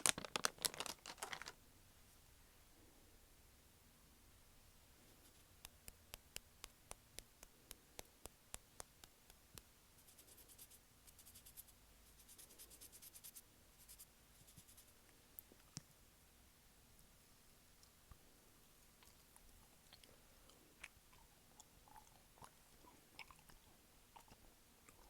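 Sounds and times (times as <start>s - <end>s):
plastic packet crinkling: 0.0s - 1.6s.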